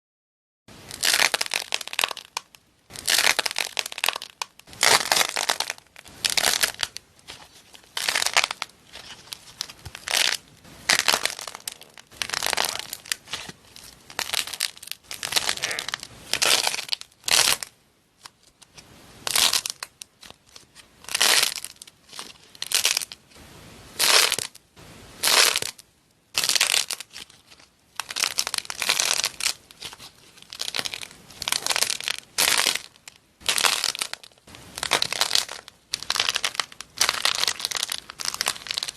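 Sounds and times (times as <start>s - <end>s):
slime squishing by hand: 0.9s - 23.2s, 25.2s - 38.9s.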